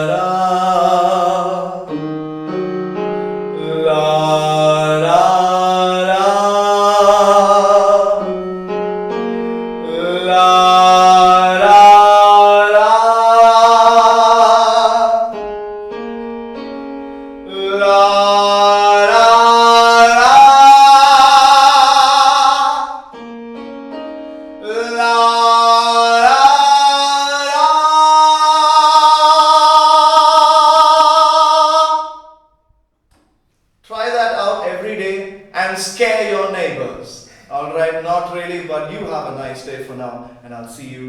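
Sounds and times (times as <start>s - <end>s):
man singing vocal warm-up: 0.0s - 15.5s, 17.4s - 23.2s, 24.6s - 32.4s, 33.8s - 41.0s
keyboard notes: 0.0s - 32.1s.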